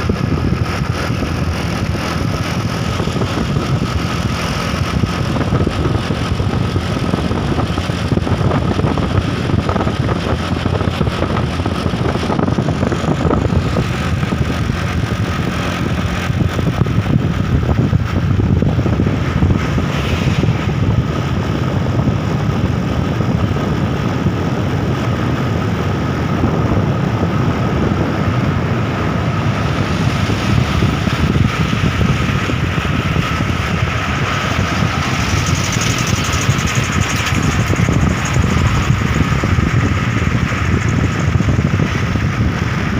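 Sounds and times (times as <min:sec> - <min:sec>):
truck engine running: 0:00.0 - 0:42.9
thin steady whine: 0:29.3 - 0:42.9.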